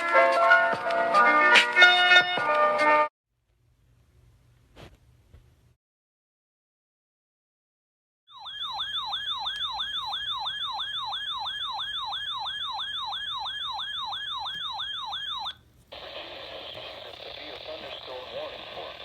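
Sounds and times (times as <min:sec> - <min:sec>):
electronic siren yelp: 0:08.3 - 0:15.6
steady hiss: 0:15.8 - 0:19.0.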